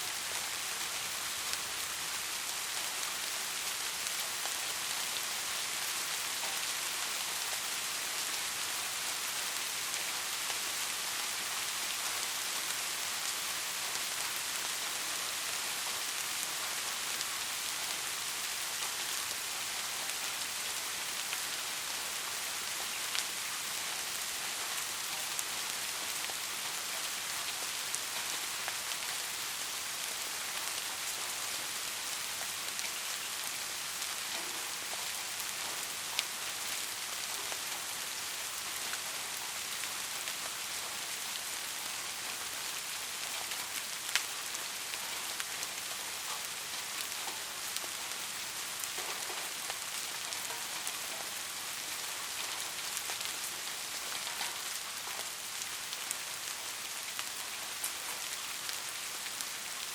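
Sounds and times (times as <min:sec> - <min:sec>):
soft steady rain: 0:00.0 - 0:59.9
raindrop ticks: 0:54.1 - 0:55.2.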